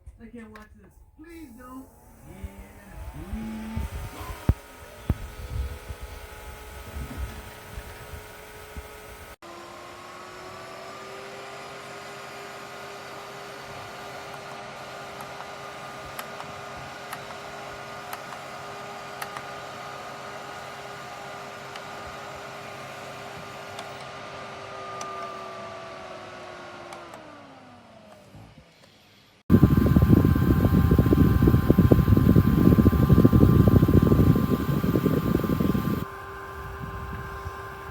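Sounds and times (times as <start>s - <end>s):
electric fan humming: 0.0s - 9.4s, 29.5s - 37.9s.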